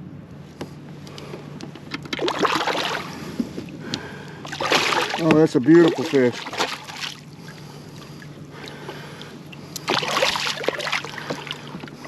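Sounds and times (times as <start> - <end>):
faint steady hum: 0.0 - 12.0
water splashing around a kayak: 2.1 - 12.0.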